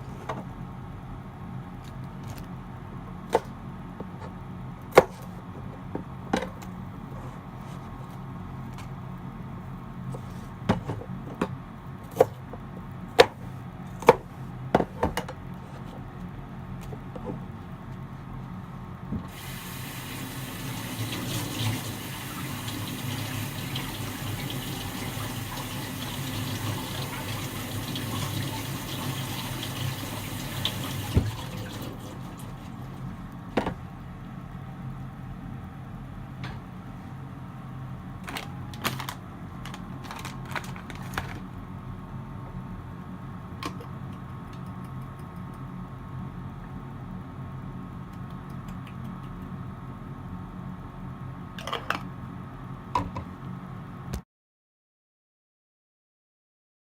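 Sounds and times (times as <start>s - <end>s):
tap running water into sink: 19.3s - 32.8s.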